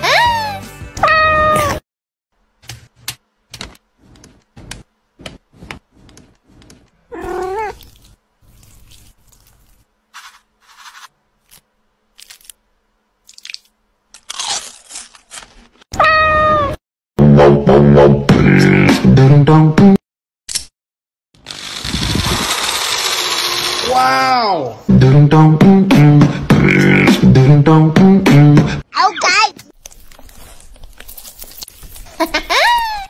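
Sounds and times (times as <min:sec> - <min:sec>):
cat meowing: 0:07.1 - 0:07.8, 0:16.0 - 0:16.8.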